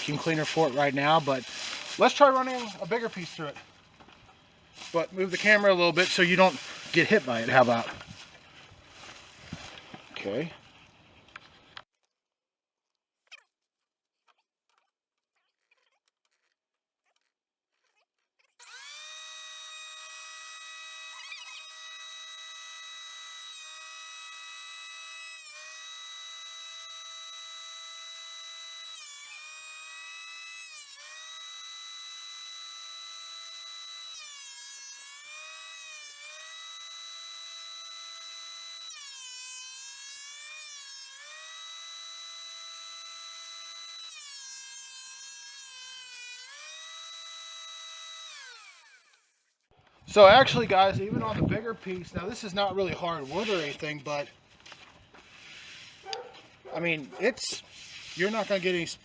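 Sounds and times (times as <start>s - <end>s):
thickness planer motor whine: 0.0s - 8.4s, 18.6s - 49.3s.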